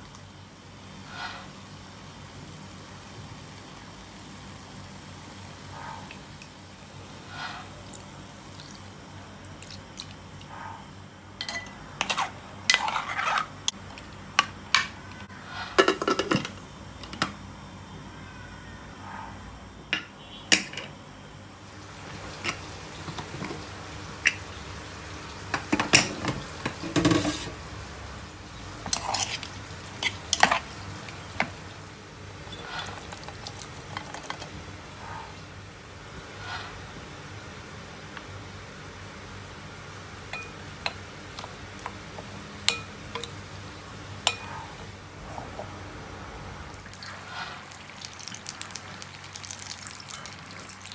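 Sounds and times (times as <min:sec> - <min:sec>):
faint steady hum: 0:00.0 - 0:50.9
utensils clinking against dishes: 0:11.4 - 0:17.4, 0:22.3 - 0:23.6, 0:25.5 - 0:27.6, 0:28.8 - 0:30.7, 0:32.4 - 0:34.5, 0:40.3 - 0:43.4, 0:44.2 - 0:44.8
stirring: 0:28.8 - 0:31.6, 0:40.3 - 0:43.4.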